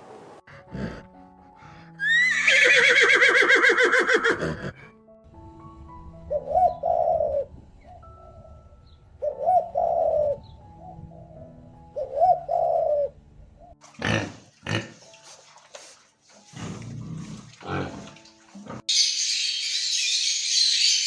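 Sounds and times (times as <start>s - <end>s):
soft background music: 0.4s - 21.0s
bird cooing: 6.3s - 8.6s, 9.2s - 13.8s.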